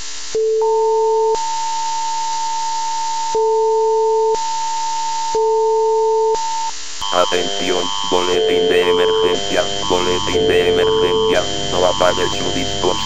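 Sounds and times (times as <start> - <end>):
steady buzzy noise: 6.8 - 13.0
steady high alert tone: 7.0 - 13.0
lower alert tone: 8.3 - 13.0.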